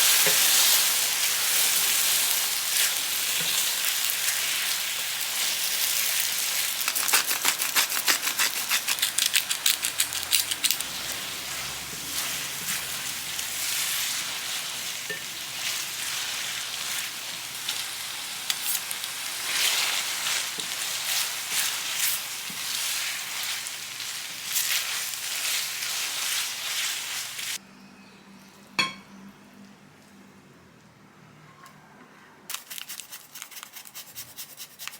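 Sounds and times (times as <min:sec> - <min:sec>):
food sizzling in a hot pan: 0:00.0 - 0:27.6.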